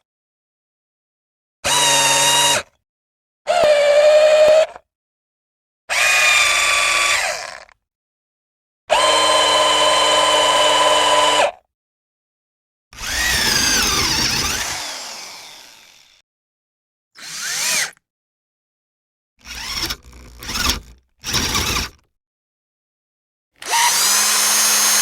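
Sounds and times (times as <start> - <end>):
electric drill motor running: 1.7 - 2.7, 3.5 - 4.8, 5.9 - 7.8, 8.9 - 11.5, 13.0 - 16.2, 17.2 - 18.0, 19.4 - 22.1, 23.6 - 25.0.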